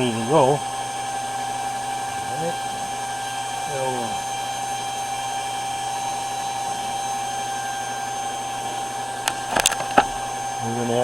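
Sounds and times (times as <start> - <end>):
water pump motor whining: 0.0 - 11.0
sharp clicks: 9.2 - 10.3.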